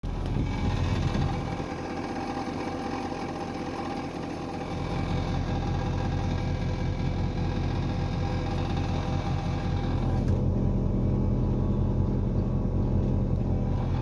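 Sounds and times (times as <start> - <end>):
car engine rumble: 0.0 - 14.0
transmission whine: 6.9 - 14.0.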